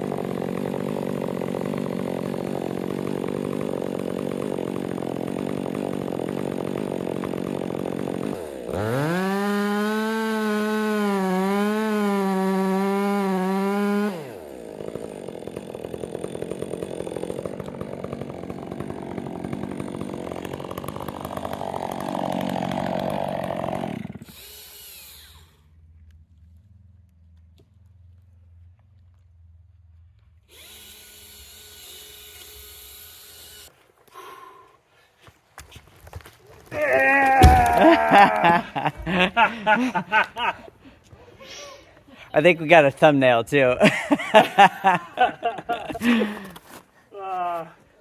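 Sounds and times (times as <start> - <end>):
chainsaw running and revving: 0.0 - 25.7, 30.5 - 33.7, 36.7 - 41.0, 43.8 - 46.9.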